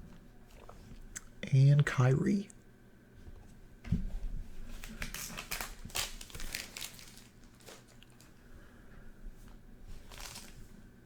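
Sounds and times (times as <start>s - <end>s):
cards and wrapper crinkling: 4.8s - 8.3s, 10.0s - 10.6s.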